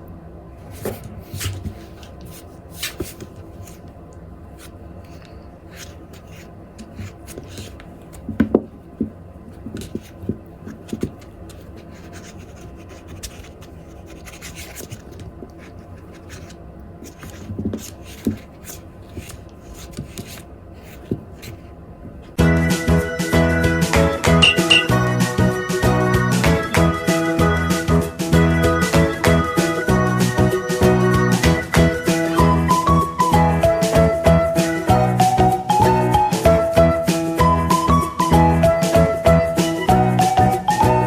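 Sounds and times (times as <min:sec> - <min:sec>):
kitten playing rustling and scratching: 0:00.6 - 0:22.4.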